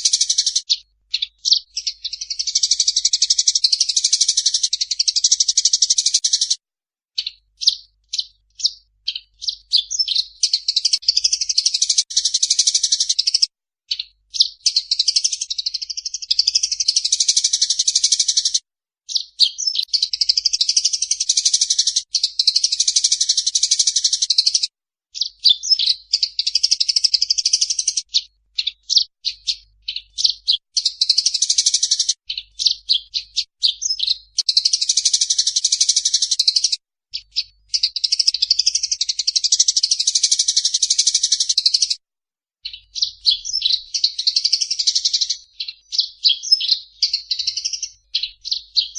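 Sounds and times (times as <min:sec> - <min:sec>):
sparrows chirping: 0:00.0 - 0:42.0, 0:42.6 - 0:48.9.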